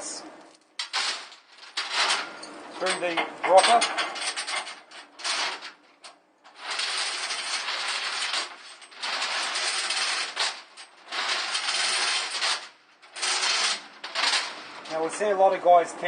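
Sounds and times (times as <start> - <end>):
steel chain rattling and clinking: 0.8 - 15.4.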